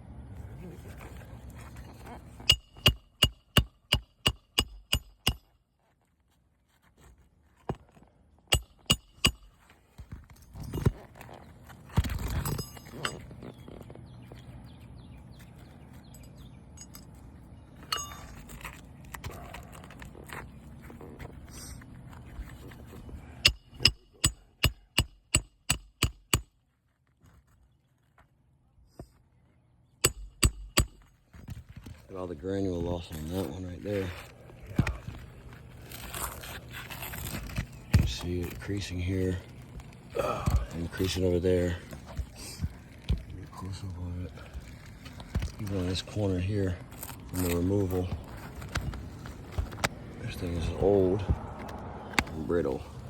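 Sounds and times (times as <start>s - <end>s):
hammer striking roofing nails: 2.5s - 5.5s, 8.5s - 9.6s, 23.4s - 26.5s, 30.0s - 31.1s.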